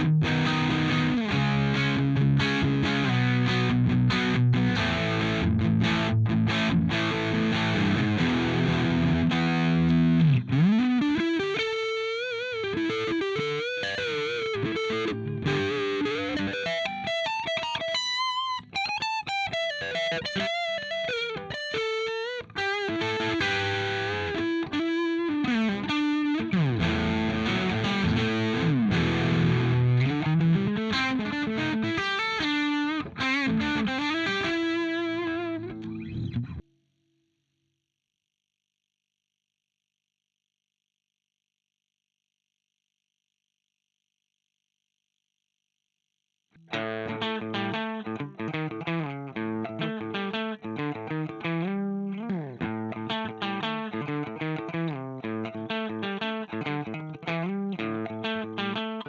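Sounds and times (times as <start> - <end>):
distorted electric guitar: 0.0 - 36.6, 46.6 - 59.0.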